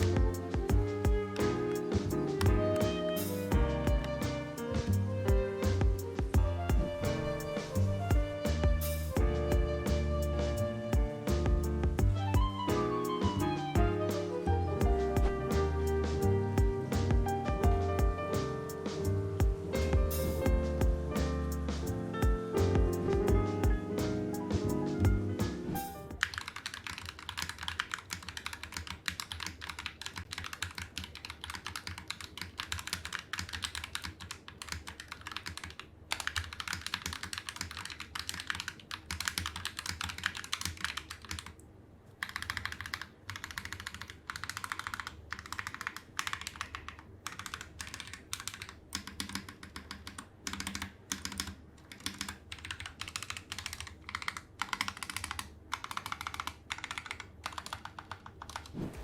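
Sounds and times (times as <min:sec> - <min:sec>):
mechanical keyboard typing: 0:25.8 - 0:41.6, 0:42.2 - 0:58.8.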